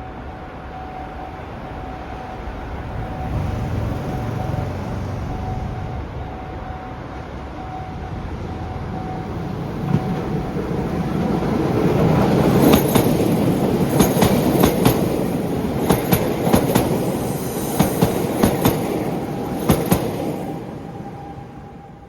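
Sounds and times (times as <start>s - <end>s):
heavy train rumble: 0.0s - 22.0s
train wheels clacking on rail joints: 9.8s - 20.5s.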